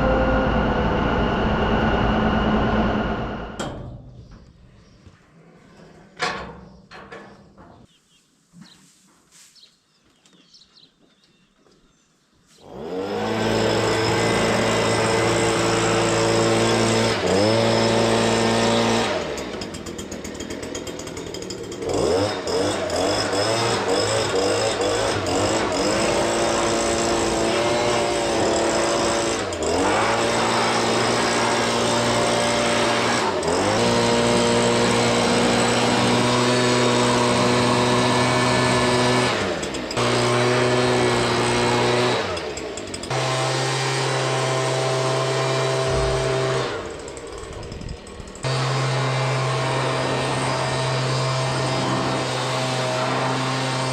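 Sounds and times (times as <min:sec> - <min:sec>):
small engine revving: 0:12.6 - 0:53.9.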